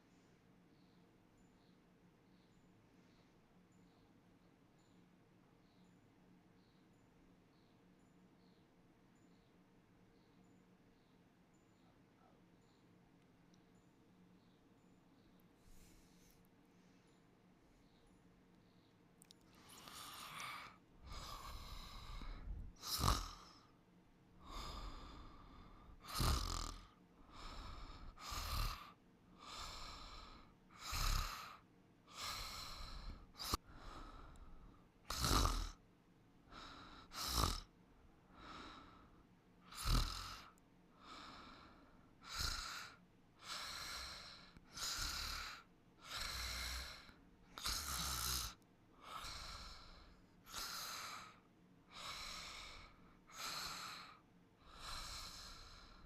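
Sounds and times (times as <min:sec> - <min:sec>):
person snoring: 0:19.6 - 0:23.6, 0:24.4 - 0:34.4, 0:35.1 - 0:35.8, 0:36.6 - 0:37.7, 0:39.7 - 0:40.6, 0:42.3 - 0:56.0.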